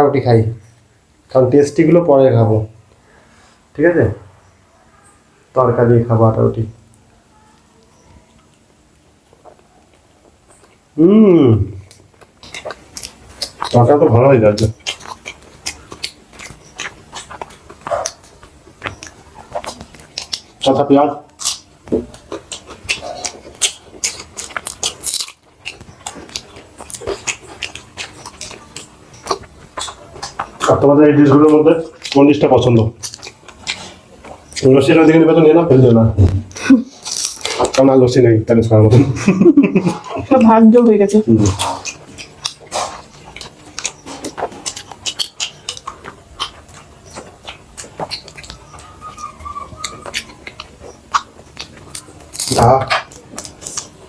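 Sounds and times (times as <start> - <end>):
crunchy chewing: 6.2 - 11.0, 11.6 - 37.9, 39.0 - 54.0
flatbread being torn: 37.0 - 37.8.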